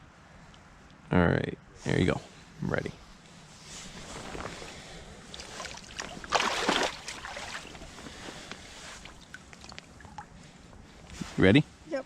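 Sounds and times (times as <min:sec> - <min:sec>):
creek water running: 0:04.1 - 0:10.4
water splash: 0:05.3 - 0:07.9.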